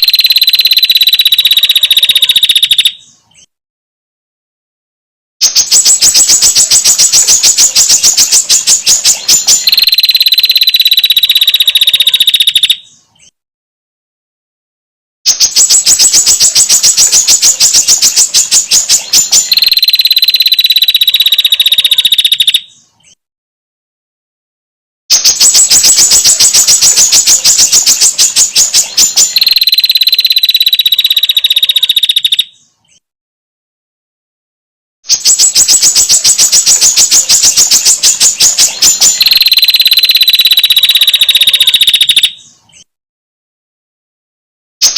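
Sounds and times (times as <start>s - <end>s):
bird rattling trill: 0.0s - 3.0s, 5.5s - 12.8s, 15.3s - 22.6s, 25.1s - 32.4s, 35.1s - 42.4s
bird harsh chattering calls: 5.4s - 12.8s, 15.3s - 23.2s, 25.1s - 32.4s, 35.1s - 42.5s.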